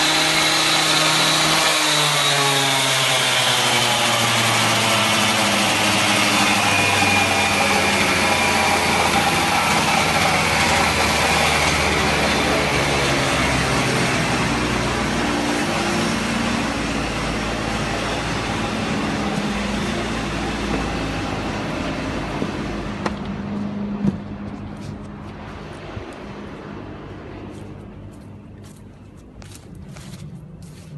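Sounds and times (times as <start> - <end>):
cut-off saw engine whining: 0.0 - 22.9.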